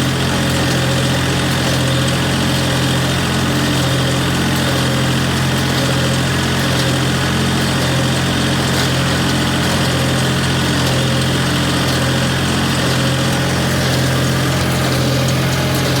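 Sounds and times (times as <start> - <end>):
tractor engine running steadily: 0.0 - 16.0.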